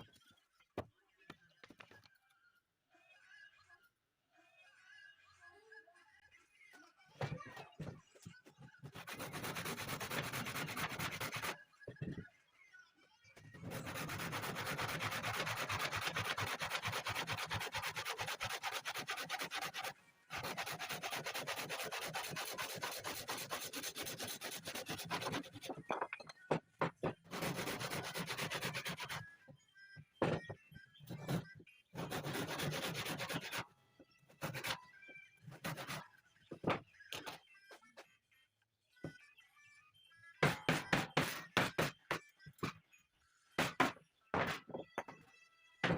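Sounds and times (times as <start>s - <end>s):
wood being sanded: 13.8s - 25.6s.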